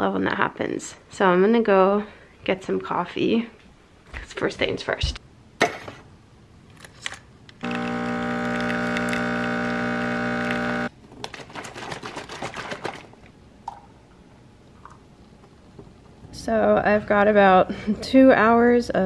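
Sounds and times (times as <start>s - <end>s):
coffee machine motor humming: 7.6s - 10.9s.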